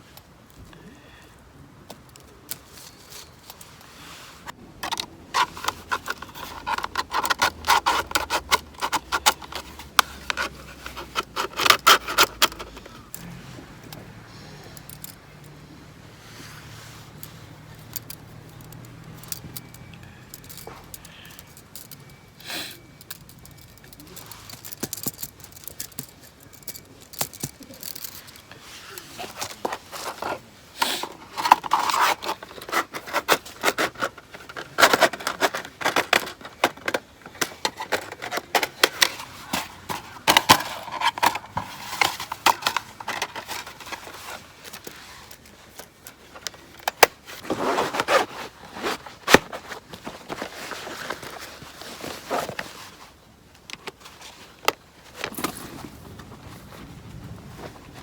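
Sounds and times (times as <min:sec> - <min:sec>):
metal camping gear clinking: 0:04.8 - 0:15.6, 0:16.7 - 0:56.5.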